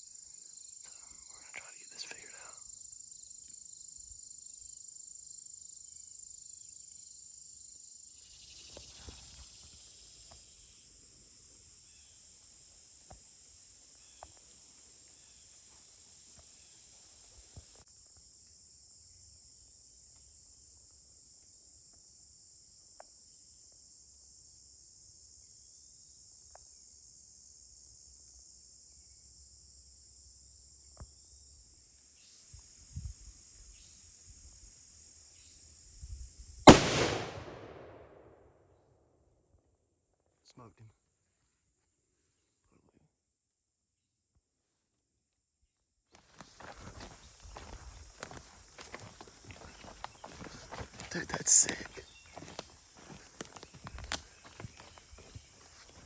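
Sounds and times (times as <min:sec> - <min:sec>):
high-pitched insect chorus: 0:00.0 - 0:36.7, 0:46.2 - 0:56.0
soft ticks and snaps: 0:53.4 - 0:54.8.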